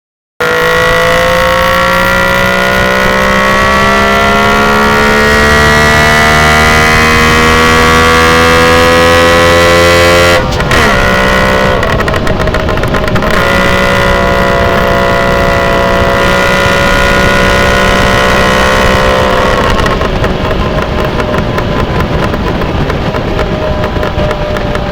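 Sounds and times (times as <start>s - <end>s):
loud multi-tone vehicle sound: 0.4s - 24.9s.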